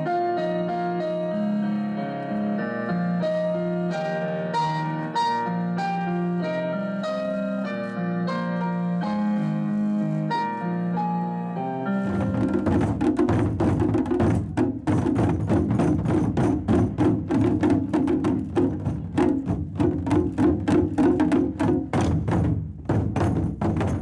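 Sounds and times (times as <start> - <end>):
piano notes: 0.0 - 24.0
fast percussion drumming: 12.0 - 24.0
wooden knocks: 12.1 - 24.0.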